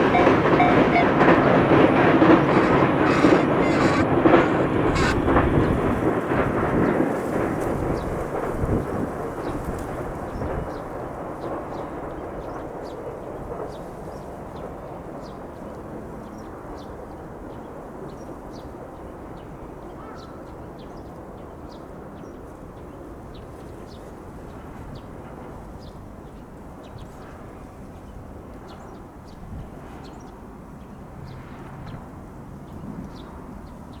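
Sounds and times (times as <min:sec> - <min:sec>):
electric train rumbling past: 0:00.0 - 0:07.0
faint bird chirps: 0:02.2 - 0:05.2.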